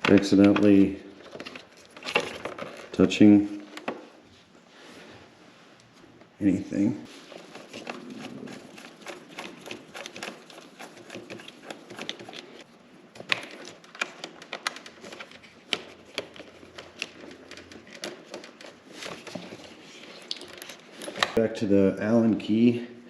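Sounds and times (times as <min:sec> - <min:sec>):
plastic pieces handled: 0:00.0 - 0:03.0, 0:07.4 - 0:21.4.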